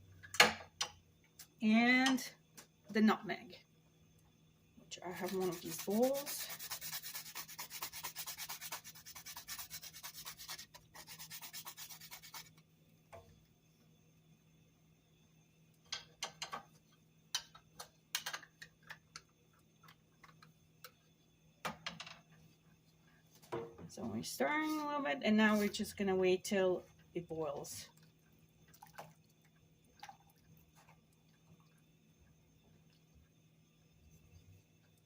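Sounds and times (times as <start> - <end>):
nutmeg being grated: 5.1 - 12.5.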